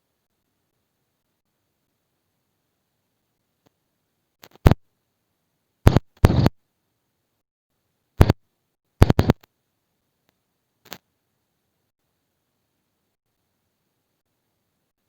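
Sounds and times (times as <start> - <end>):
short sharp clicks and knocks: 5.9 - 6.5, 9.0 - 9.5.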